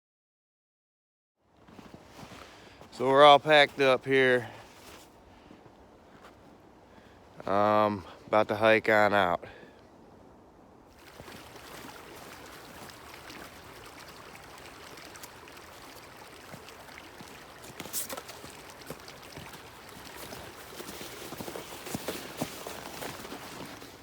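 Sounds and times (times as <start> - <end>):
crunching footsteps on trail: 1.5 - 8.4, 10.9 - 24.0.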